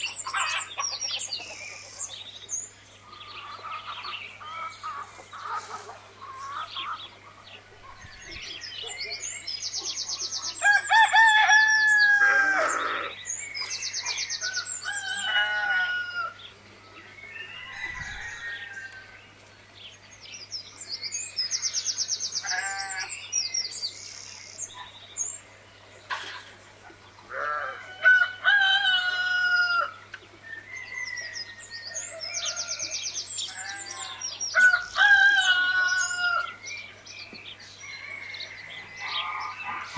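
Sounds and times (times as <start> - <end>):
small birds chirping: 0.0 - 15.6, 16.2 - 27.6
hens clucking: 3.1 - 8.0
rooster crowing: 10.6 - 13.2, 14.4 - 16.4, 17.4 - 19.2, 27.3 - 36.7, 37.8 - 39.9.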